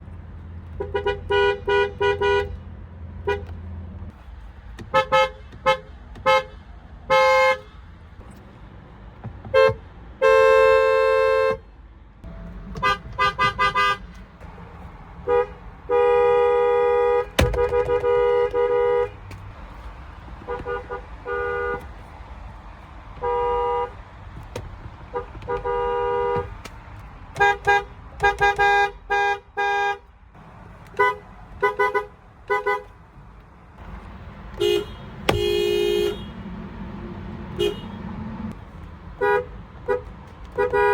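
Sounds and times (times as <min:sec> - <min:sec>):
car horns honking: 0:00.7 - 0:02.6, 0:03.2 - 0:03.6, 0:04.8 - 0:07.8, 0:09.5 - 0:11.6, 0:12.3 - 0:14.2, 0:15.2 - 0:19.5, 0:20.4 - 0:21.9, 0:23.1 - 0:24.0, 0:25.1 - 0:26.6, 0:27.3 - 0:30.1, 0:30.9 - 0:33.0, 0:33.8 - 0:38.6, 0:39.2 - 0:40.9
low rumble: 0:33.8 - 0:38.6.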